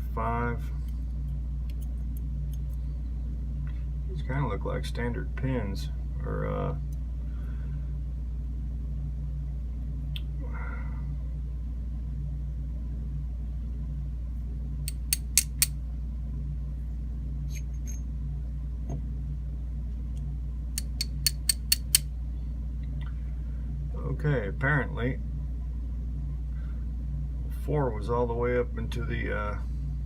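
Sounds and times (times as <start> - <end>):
steady low hum: 0.0 - 30.0
small metal clicks of lock parts: 14.9 - 15.7, 20.8 - 22.0.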